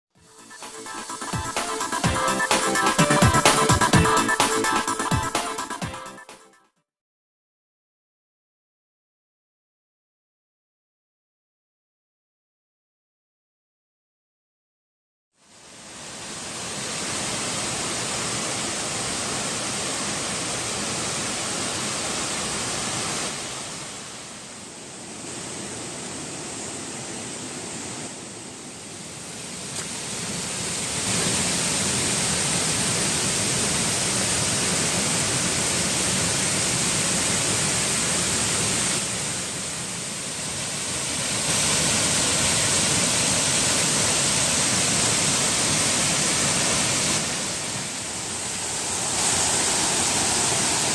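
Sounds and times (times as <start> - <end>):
waterfall rushing: 0.4 - 5.7, 15.6 - 50.9.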